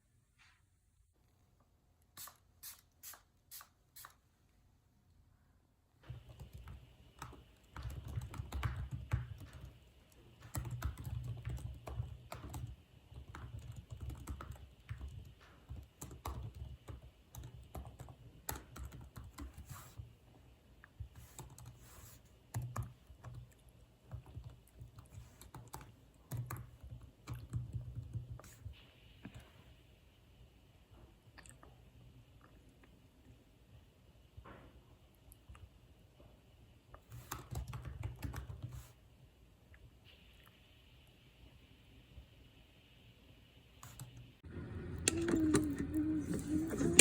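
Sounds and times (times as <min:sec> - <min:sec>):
typing on computer keyboard: 0:06.1 - 0:19.8, 0:21.2 - 0:21.8, 0:22.5 - 0:28.5, 0:37.3 - 0:38.8, 0:45.0 - 0:47.0.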